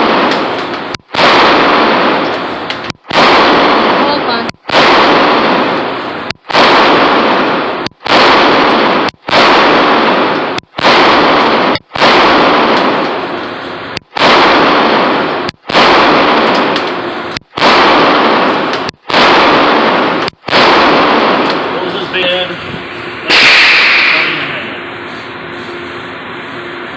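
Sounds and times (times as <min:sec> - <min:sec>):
pistol shots echoing indoors: 0:00.0 - 0:21.8, 0:23.3 - 0:24.4.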